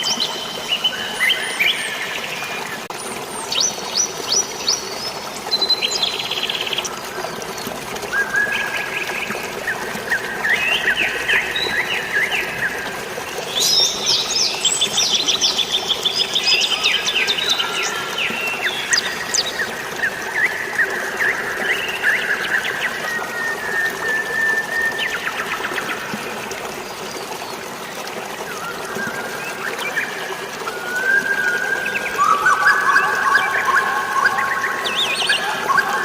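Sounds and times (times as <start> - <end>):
flowing water: 0.0 - 36.0
birds chirping and trilling: 31.1 - 36.0.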